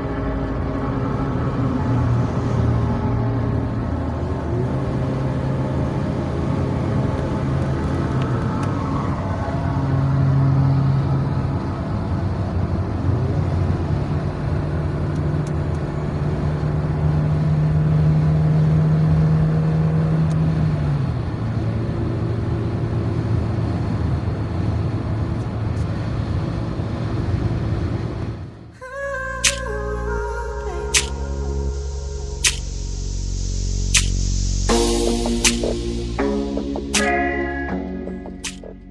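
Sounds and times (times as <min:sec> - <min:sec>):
bus diesel engine revving: 0:00.0 - 0:28.7.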